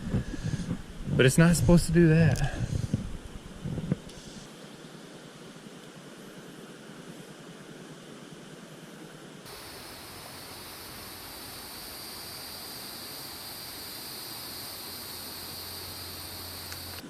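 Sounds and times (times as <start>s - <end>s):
creek water rushing: 9.5s - 17.0s.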